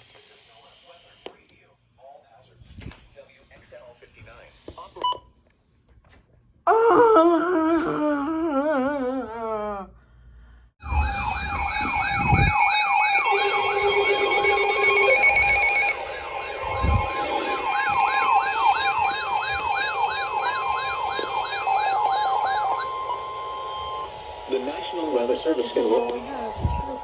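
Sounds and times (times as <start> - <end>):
electronic siren yelping: 10.8 - 27.0
wavering tone falling in pitch: 10.8 - 27.0.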